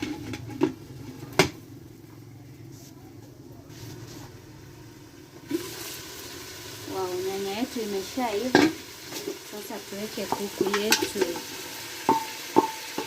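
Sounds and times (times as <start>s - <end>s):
cookware clinking on metal pot: 8.5s - 9.3s, 10.2s - 13.0s.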